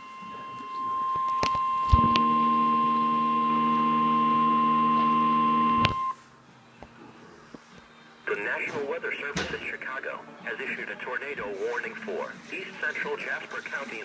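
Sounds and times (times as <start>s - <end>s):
loud steady alarm beep: 0.0s - 6.2s
low steady hum: 0.0s - 6.2s.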